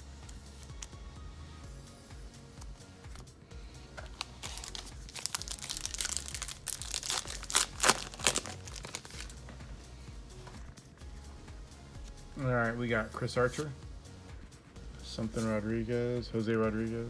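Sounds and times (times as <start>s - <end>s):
quiet background music: 0.0s - 17.0s
foil wrapper crinkling: 4.0s - 9.4s.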